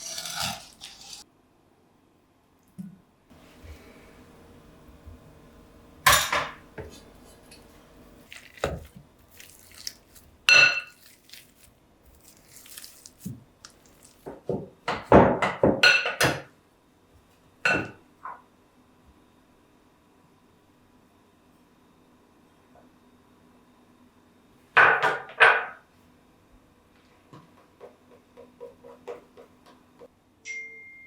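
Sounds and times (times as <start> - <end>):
dishes and glassware clinking: 10.5 - 11.1, 15.5 - 16.4.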